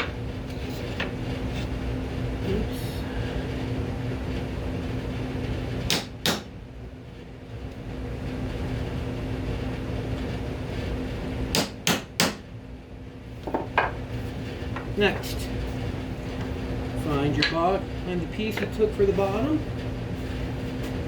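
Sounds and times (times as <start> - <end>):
hammer striking nail punch: 11.5 - 12.4.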